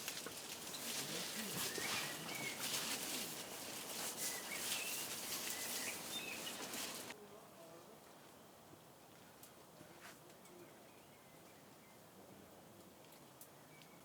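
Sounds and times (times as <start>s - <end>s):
outdoor hiss: 0.0s - 7.2s.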